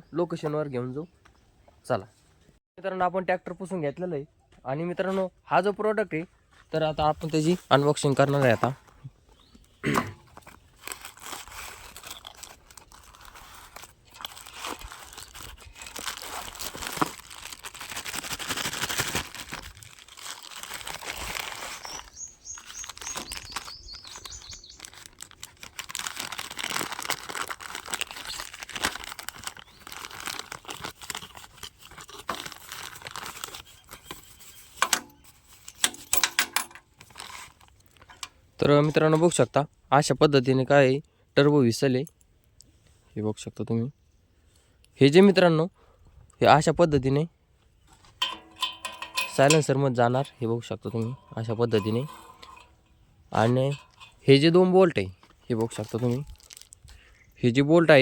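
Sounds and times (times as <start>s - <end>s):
bird chirping: 9.1s - 9.9s, 21.6s - 25.2s
packaging crinkling and tearing: 10.3s - 36.0s, 37.0s - 38.1s, 55.5s - 57.0s.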